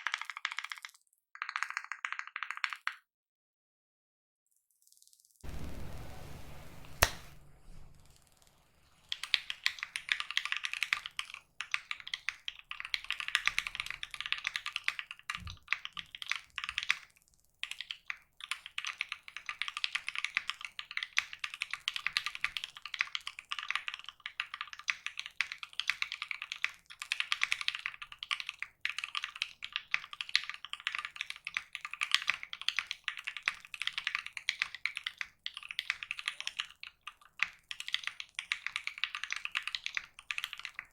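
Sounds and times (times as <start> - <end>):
fast mechanical keyboard typing: 0.0 - 3.0, 9.0 - 40.9
single click: 6.7 - 8.0.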